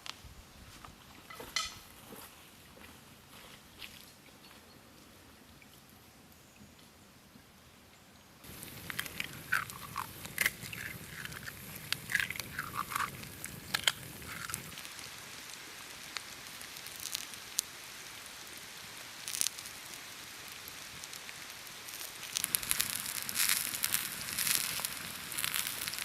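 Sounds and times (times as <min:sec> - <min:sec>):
campfire crackling: 0:08.4 - 0:26.0
sharp pops: 0:08.5 - 0:15.0.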